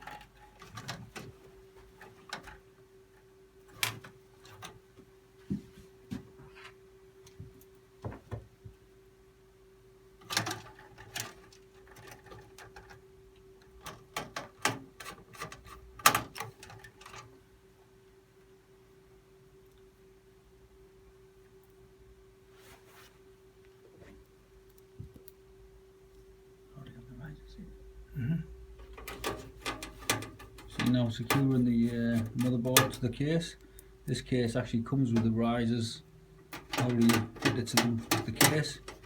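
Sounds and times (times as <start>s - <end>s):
faint steady hum: 0.0s - 39.0s
computer parts clicking and knocking: 10.2s - 13.0s, 13.8s - 17.2s, 28.8s - 33.3s, 34.2s - 35.7s, 36.4s - 39.0s.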